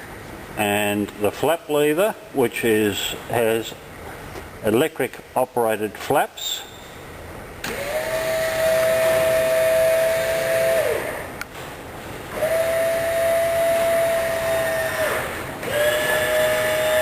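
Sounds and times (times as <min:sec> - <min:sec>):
electric motor whining: 0:07.7 - 0:11.4, 0:12.3 - 0:17.0.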